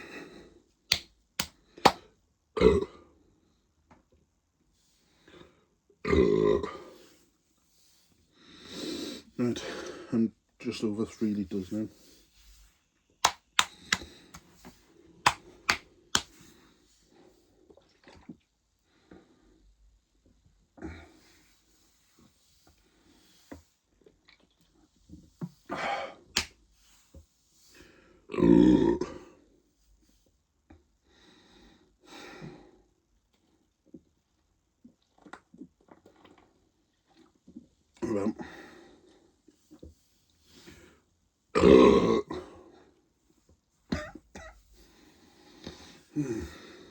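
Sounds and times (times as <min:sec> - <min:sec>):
man gulping and swallowing: 0:17.8 - 0:18.5, 0:34.8 - 0:38.4, 0:43.9 - 0:44.6
man exhaling: 0:46.1 - 0:46.9.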